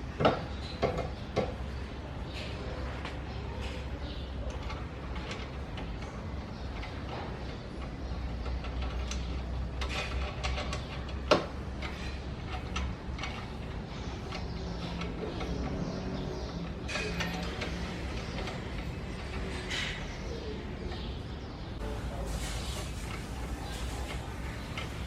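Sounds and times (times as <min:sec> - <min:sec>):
hand tools clicking on metal: 0:02.4 - 0:21.2.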